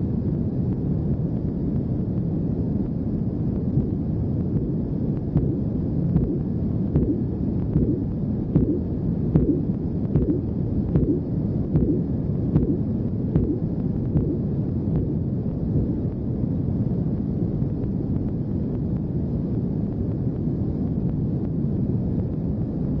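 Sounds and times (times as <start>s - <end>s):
low rumble: 0.0s - 23.0s.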